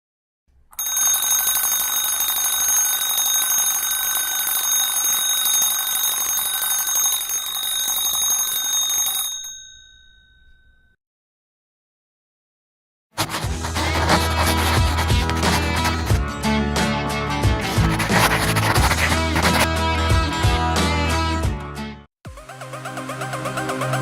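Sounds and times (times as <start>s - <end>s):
electric school bell ringing: 0.8s - 10.8s.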